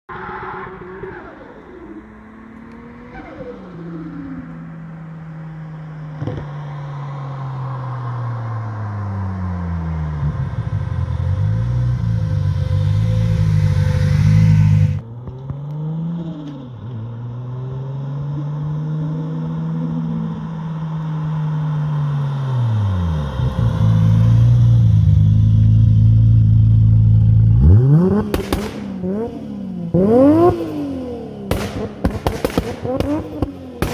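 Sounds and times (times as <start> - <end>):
car engine revving hard: 10.2 - 15.0, 27.4 - 33.9
exhaust pops and bangs: 28.2 - 29.1, 31.5 - 33.9.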